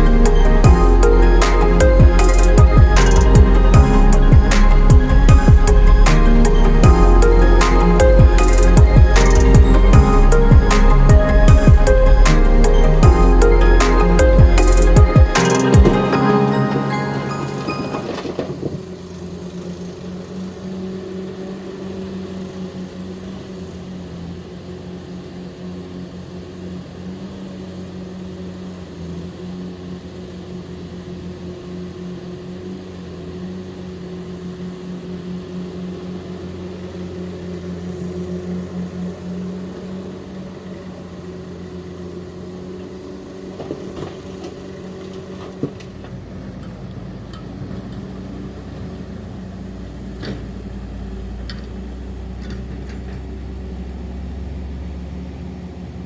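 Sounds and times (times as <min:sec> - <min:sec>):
heavy diesel engine running: 0:00.0 - 0:24.5.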